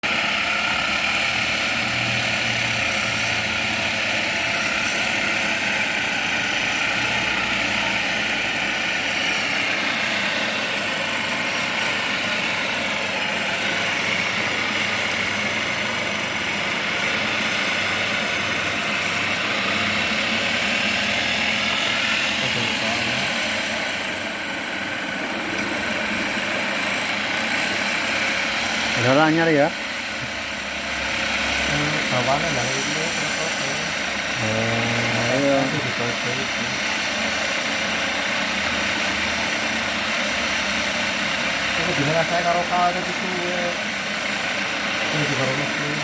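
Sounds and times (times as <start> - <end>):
workshop machine whining: 0.0 - 46.0.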